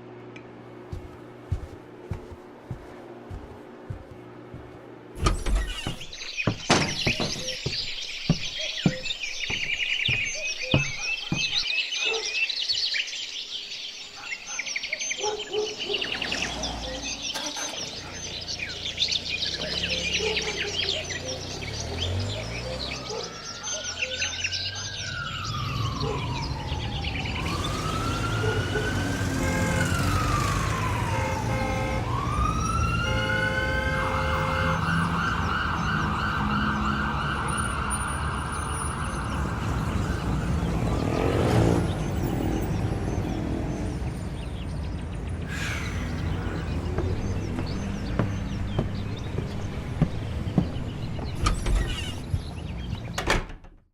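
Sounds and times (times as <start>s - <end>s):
regular knocks: 0.9s - 11.8s, 46.4s - 53.8s
birds chirping: 0.9s - 37.3s, 39.0s - 53.4s
wailing siren: 19.6s - 42.1s.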